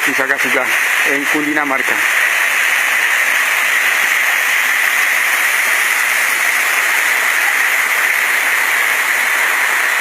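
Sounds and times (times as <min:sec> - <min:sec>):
waterfall roaring: 0:00.0 - 0:10.0.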